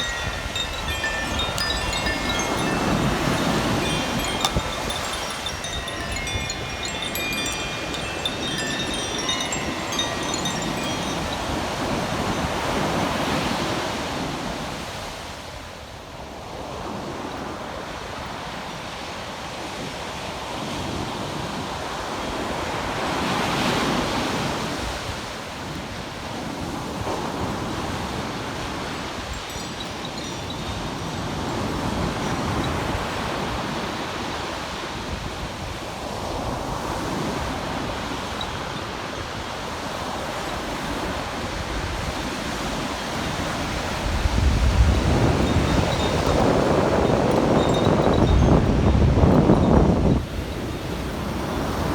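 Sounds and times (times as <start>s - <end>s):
chime ringing: 0.0s - 13.1s, 29.2s - 32.8s, 45.0s - 49.7s
wind on microphone: 0.0s - 14.3s, 35.1s - 51.9s
waves breaking on beach: 0.0s - 15.2s.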